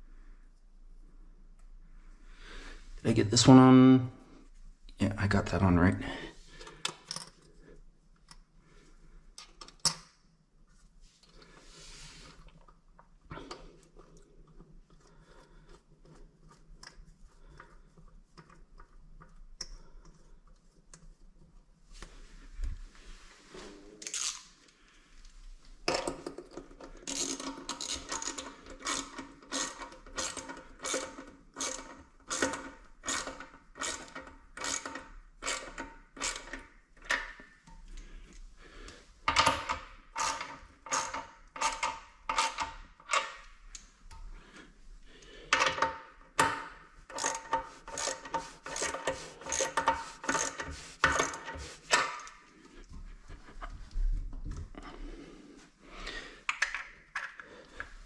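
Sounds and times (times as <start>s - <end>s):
ratchet wrench clicking: 24.0s - 24.4s, 27.1s - 36.6s, 47.1s - 51.6s.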